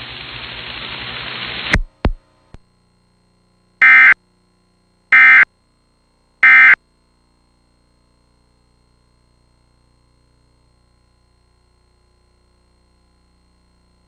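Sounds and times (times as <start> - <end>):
static hiss: 0.0 - 2.2
short digital data bursts: 3.8 - 4.2, 5.2 - 5.4, 6.4 - 6.8.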